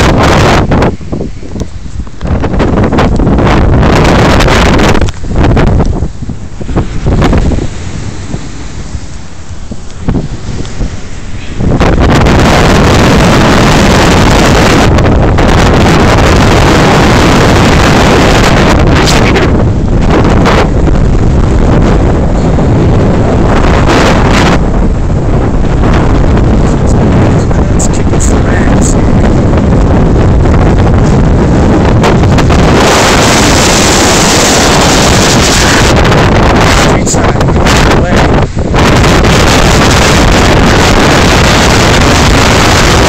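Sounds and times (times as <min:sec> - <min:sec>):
churning floodwater: 0:00.0 - 0:43.0
wind buffeting microphone: 0:00.0 - 0:43.0
loud low rumble: 0:11.3 - 0:43.0.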